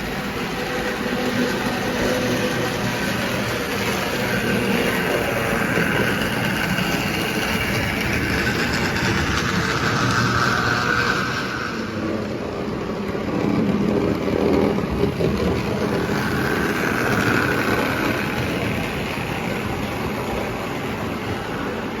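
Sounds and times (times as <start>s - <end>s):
wheels rumbling on rails: 0.0s - 22.0s
toy train motor whine: 1.9s - 12.3s, 15.8s - 18.7s.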